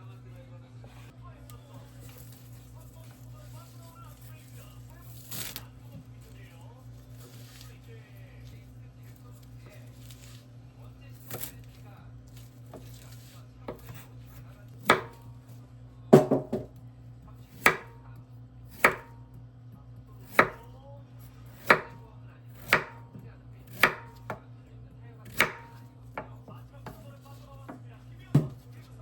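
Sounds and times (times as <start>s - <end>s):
knife chopping on cutting board: 11.2s - 15.3s, 16.1s - 16.7s, 17.5s - 18.0s, 18.7s - 19.2s, 20.2s - 20.7s, 21.5s - 24.4s, 25.2s - 28.8s.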